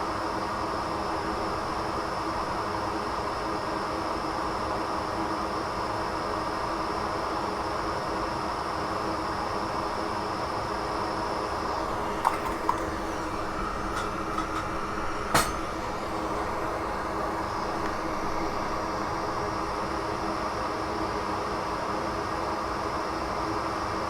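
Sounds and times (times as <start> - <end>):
tools clicking on work: 12.2 - 16.0.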